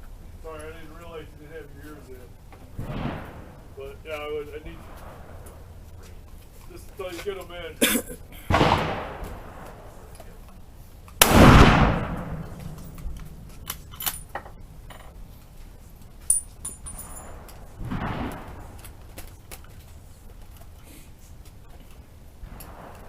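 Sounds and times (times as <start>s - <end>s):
rifle shots echoing: 2.8s - 3.9s, 8.5s - 10.1s, 11.2s - 14.3s, 17.0s - 19.0s.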